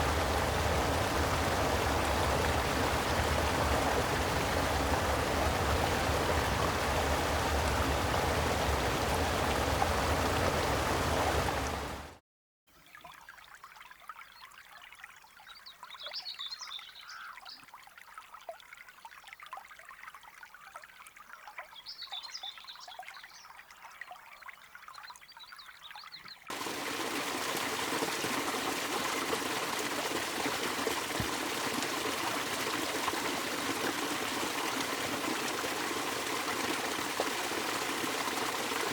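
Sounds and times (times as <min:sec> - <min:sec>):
water trickling: 0:00.0 - 0:12.1, 0:17.0 - 0:38.9
creek water rushing: 0:00.0 - 0:12.2, 0:26.5 - 0:38.9.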